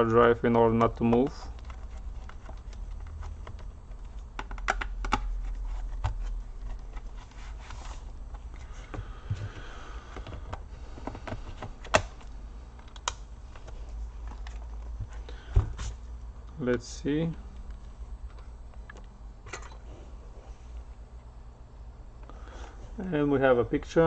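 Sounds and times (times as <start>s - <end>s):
steady low hum: 0.0s - 24.0s
clicks and taps of laptop parts: 0.5s - 5.4s, 10.1s - 15.1s.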